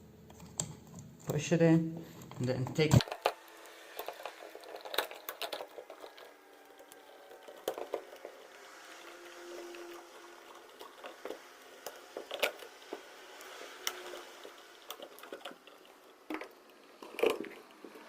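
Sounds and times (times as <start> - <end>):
small tool clicking and scraping wires: 0.2 - 18.0.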